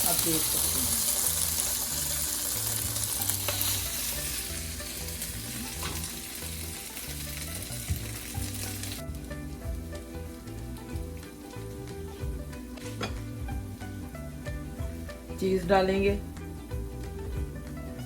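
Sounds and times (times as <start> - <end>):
chicken sizzling in oil: 0.0 - 18.0.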